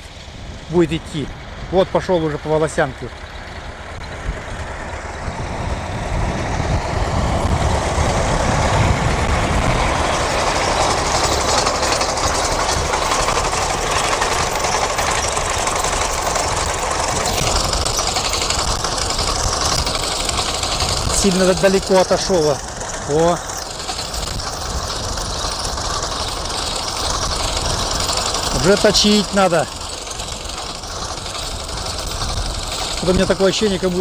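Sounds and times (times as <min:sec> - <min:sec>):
tractor mower clattering: 0:00.0 - 0:34.0
wind rumbling on microphone: 0:03.5 - 0:23.2.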